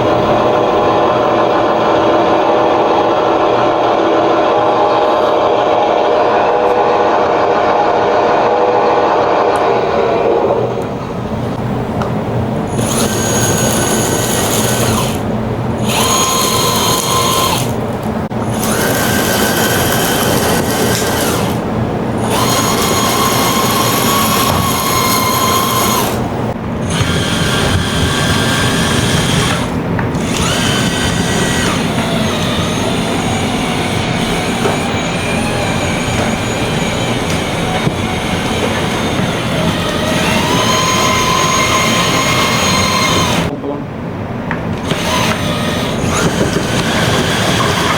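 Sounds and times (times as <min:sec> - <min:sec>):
electric motor whine: 0:12.6 - 0:43.5, 0:44.8 - 0:47.9.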